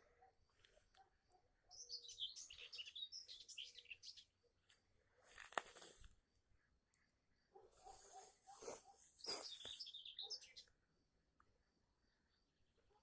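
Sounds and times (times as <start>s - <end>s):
faint bird twittering: 1.7s - 4.3s, 7.8s - 10.7s.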